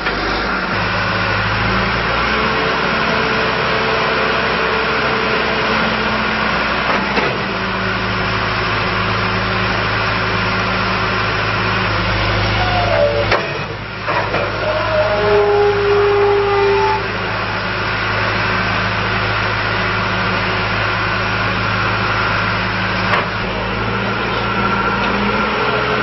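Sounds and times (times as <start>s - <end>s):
diesel engine running: 0.0s - 26.0s
short wavering whines: 12.3s - 17.4s.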